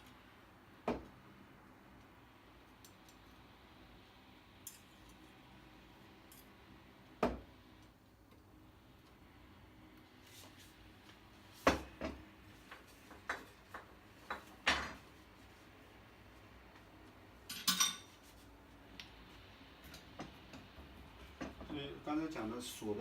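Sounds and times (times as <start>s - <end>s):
ringing metal clink: 17.5s - 18.1s.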